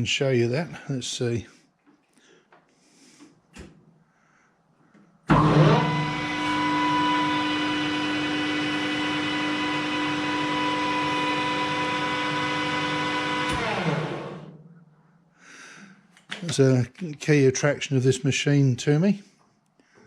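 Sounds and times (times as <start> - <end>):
lathe spindle whining: 5.3 - 14.7.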